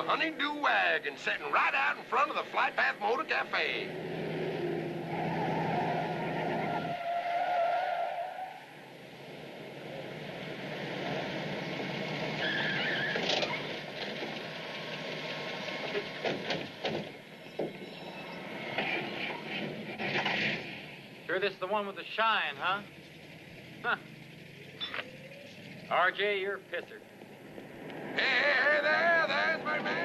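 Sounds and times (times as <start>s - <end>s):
tyre and road noise: 0.0s - 30.0s
low engine hum: 22.8s - 30.0s.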